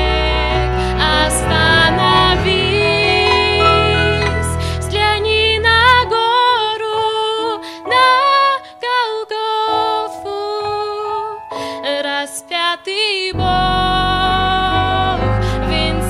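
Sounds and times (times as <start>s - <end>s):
deep bass: 0.1s - 6.0s
held chords: 0.4s - 6.2s
melody line: 0.8s - 6.2s.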